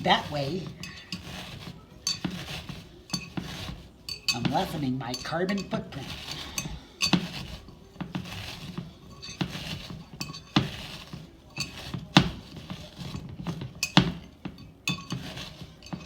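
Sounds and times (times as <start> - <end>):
tool clinking against glass: 0.0 - 16.0
chips crunching: 5.8 - 16.0.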